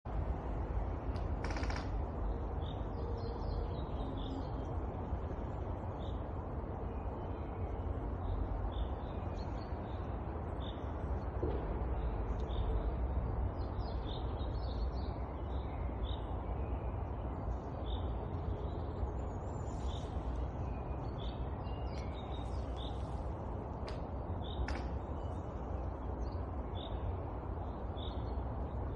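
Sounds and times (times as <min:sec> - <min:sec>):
wind through pine forest: 0:00.0 - 0:28.9
tree trunk creaking: 0:01.1 - 0:02.1
small birds chirping: 0:13.6 - 0:28.9.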